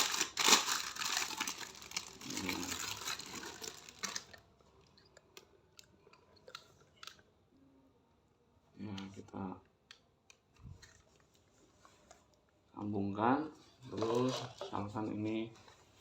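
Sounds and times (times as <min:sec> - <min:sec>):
plastic rustling and crinkling: 0:00.0 - 0:05.4, 0:13.5 - 0:16.0.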